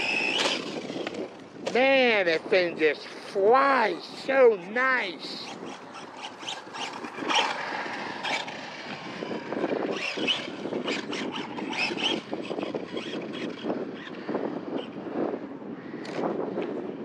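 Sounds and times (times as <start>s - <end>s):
electric motor whining: 0.0s - 1.8s, 4.5s - 15.0s
wind buffeting microphone: 0.0s - 17.0s.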